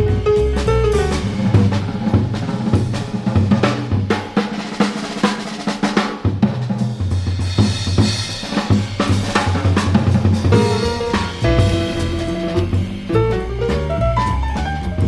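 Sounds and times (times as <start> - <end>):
piano tones: 0.0 - 4.5, 9.3 - 15.0
jazz drum kit: 0.0 - 15.0.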